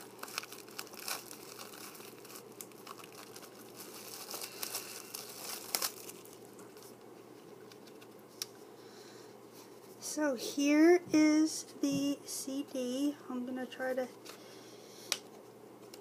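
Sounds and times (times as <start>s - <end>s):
plastic wrapping crinkling: 0.0s - 7.0s.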